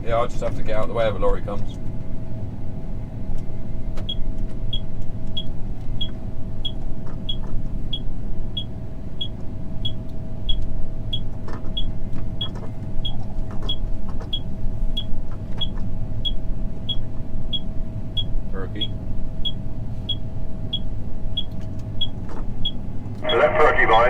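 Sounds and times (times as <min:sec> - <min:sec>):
engine and road rumble: 0:00.0 - 0:24.0
turn indicator ticking: 0:08.6 - 0:22.8.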